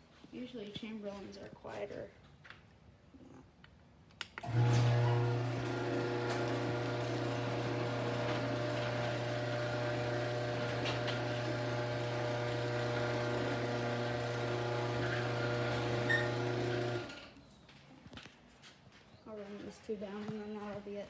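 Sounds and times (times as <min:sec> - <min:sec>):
garage door opener motor humming: 0:04.4 - 0:17.4.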